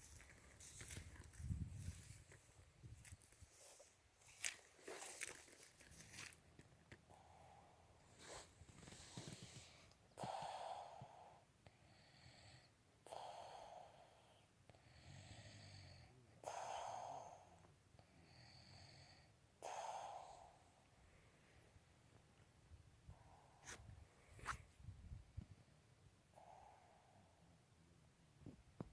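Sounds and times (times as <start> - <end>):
soft breathing: 7.0 - 25.0, 26.3 - 27.7.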